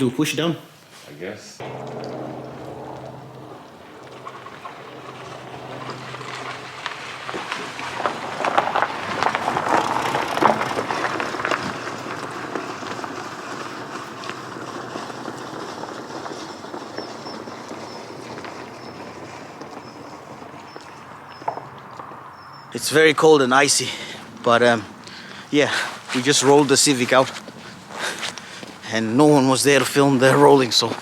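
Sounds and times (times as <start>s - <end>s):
tyres crunching on ice: 4.2s - 22.3s.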